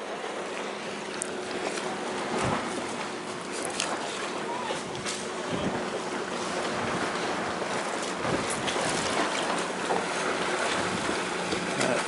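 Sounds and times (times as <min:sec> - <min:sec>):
water washing against hull: 0:00.0 - 0:12.0
wind buffeting microphone: 0:02.2 - 0:03.4, 0:04.4 - 0:11.8.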